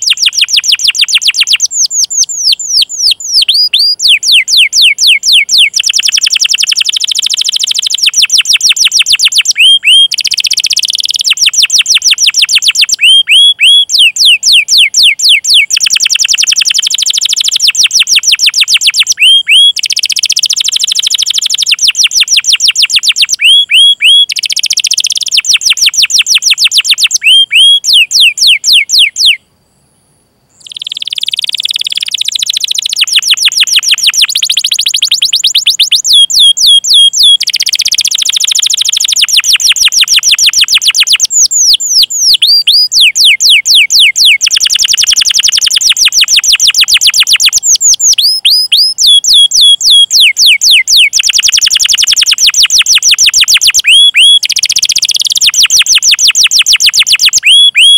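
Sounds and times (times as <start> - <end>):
canary singing: 0.0 - 29.4, 30.5 - 57.9.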